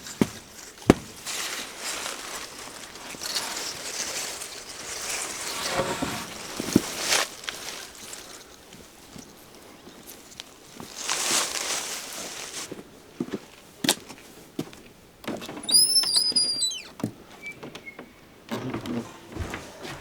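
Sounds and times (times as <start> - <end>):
door hinge squeaking: 5.6 - 6.8, 15.6 - 19.4.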